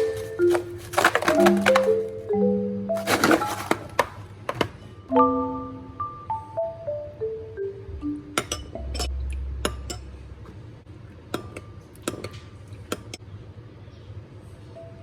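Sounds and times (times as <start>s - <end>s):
utensils clinking against dishes: 0.0s - 2.2s, 3.0s - 4.7s.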